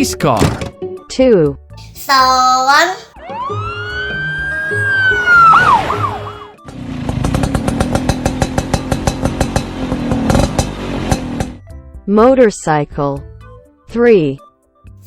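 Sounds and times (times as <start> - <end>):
police siren wailing: 3.1 - 6.7
motorcycle engine putter: 7.2 - 11.6.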